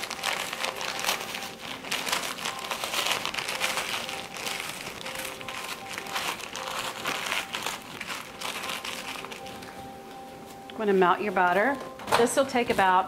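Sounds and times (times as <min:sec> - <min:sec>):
crackers being crushed: 0:00.0 - 0:09.8.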